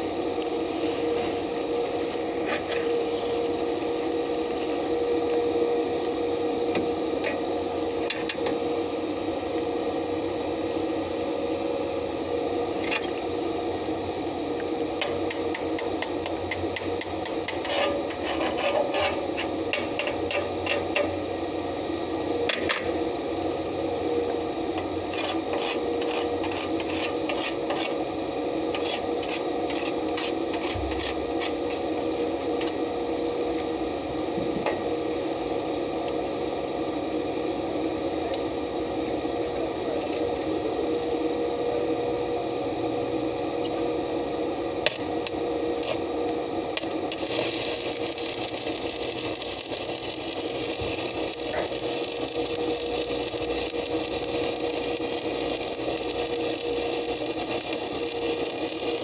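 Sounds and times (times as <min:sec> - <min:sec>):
machine hum: 0:41.6 - 0:59.0.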